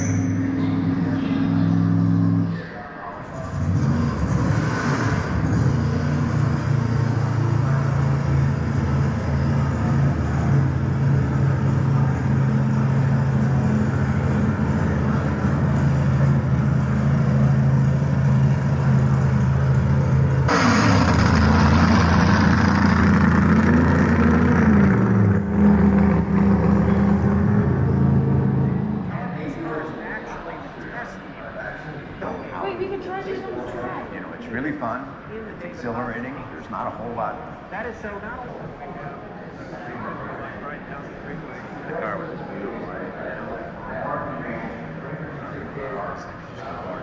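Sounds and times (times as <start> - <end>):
car engine cruising: 0.0 - 32.2
road noise: 0.0 - 47.0.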